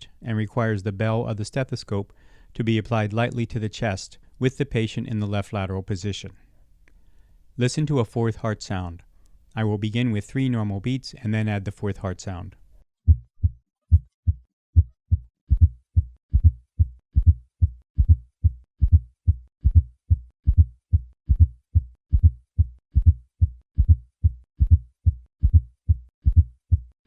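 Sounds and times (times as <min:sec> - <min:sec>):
heartbeat with gallop: 0:13.1 - 0:27.0.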